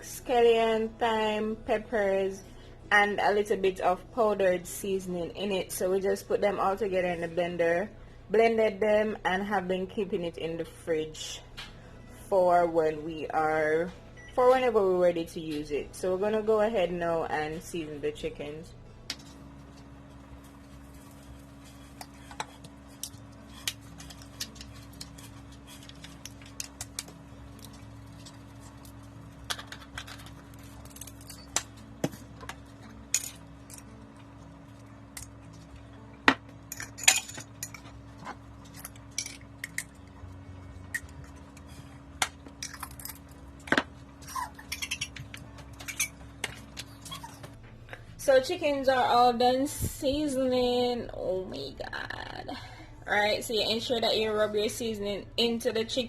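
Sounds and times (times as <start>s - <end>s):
steady low hum: 0.0s - 56.0s
bowls and utensils clinking: 44.4s - 46.9s.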